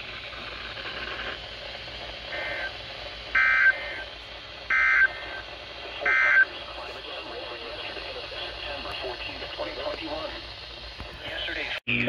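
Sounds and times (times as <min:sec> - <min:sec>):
radio hiss: 0:00.0 - 0:12.0
warbling two-tone data squawks: 0:02.2 - 0:06.6.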